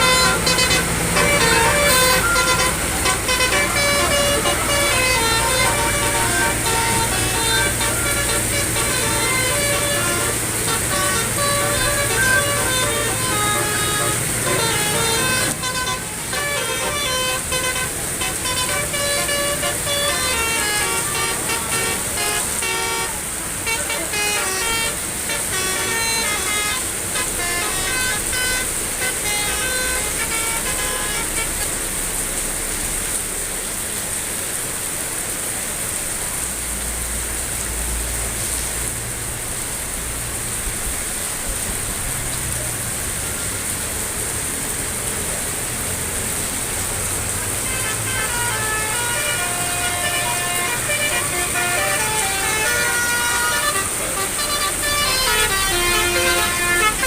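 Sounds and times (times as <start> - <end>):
musical bus horn tune: 0.0 - 32.8, 47.4 - 57.0.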